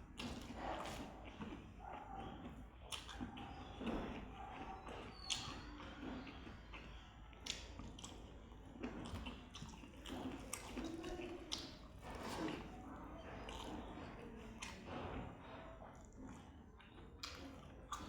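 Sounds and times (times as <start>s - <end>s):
person chewing wetly: 0.0s - 18.0s
mouth smacks and clicks: 16.8s - 18.0s.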